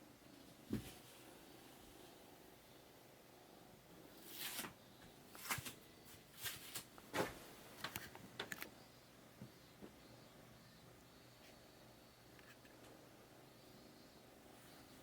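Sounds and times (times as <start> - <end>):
scratching and rustling: 4.2 - 8.7.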